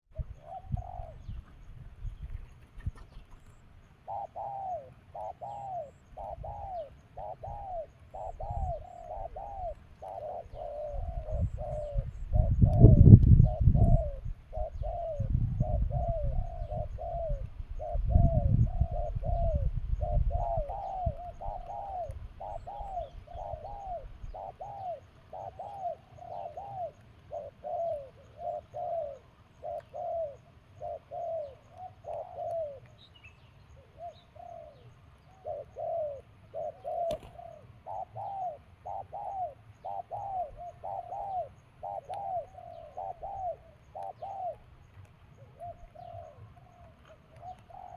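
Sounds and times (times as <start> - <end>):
low rumble of handling or wind: 0.1 - 4.0, 6.1 - 25.4
low hooting bird-lure call: 3.9 - 33.1, 33.7 - 47.9.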